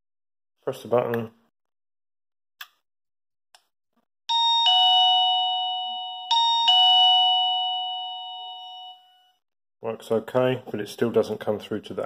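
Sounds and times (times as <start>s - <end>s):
doorbell ding-dong chime: 4.3s - 9.4s.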